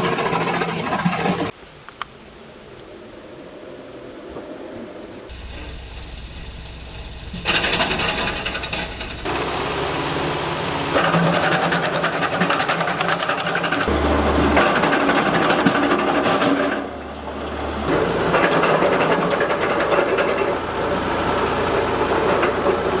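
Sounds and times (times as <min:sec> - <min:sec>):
wood chipper rattling: 0:00.0 - 0:01.5, 0:07.3 - 0:23.0.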